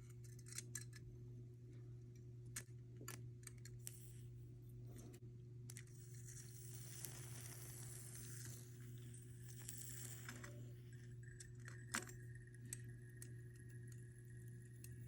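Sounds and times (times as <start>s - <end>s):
steady low hum: 0.0s - 15.0s
hot metal ticking and sizzling: 6.0s - 15.0s.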